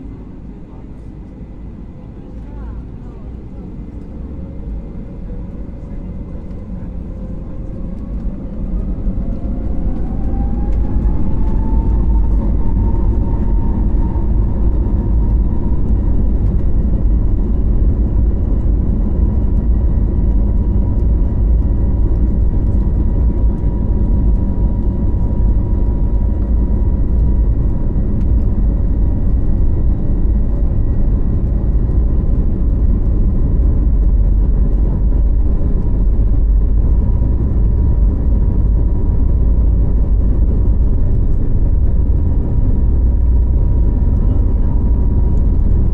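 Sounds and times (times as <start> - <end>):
jet engines spooling up: 6.4 - 17.4.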